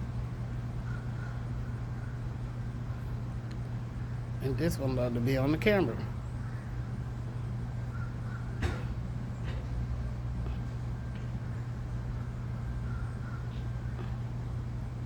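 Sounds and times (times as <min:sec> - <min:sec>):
vehicle engine idling: 0:00.0 - 0:15.0
faint short bird calls: 0:00.8 - 0:02.4, 0:06.2 - 0:09.8, 0:10.4 - 0:14.8.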